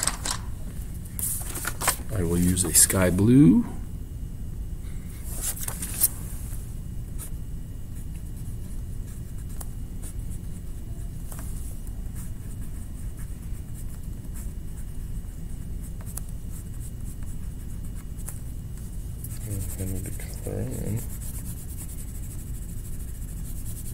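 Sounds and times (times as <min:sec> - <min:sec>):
steady low hum: 0:00.0 - 0:23.9
colouring tool scratching paper: 0:12.0 - 0:23.9.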